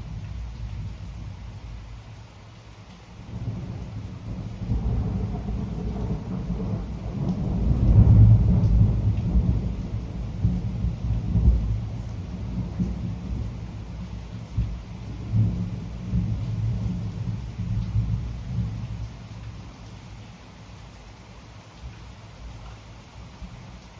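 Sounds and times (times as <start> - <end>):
steady rainfall: 0.0 - 23.9
rolling thunder: 3.3 - 13.8.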